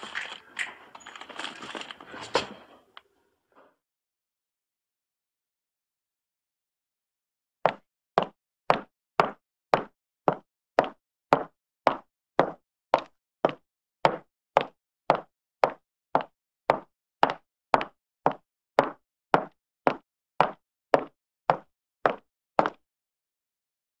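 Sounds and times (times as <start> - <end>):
footsteps on wooden floor: 7.7 - 22.8.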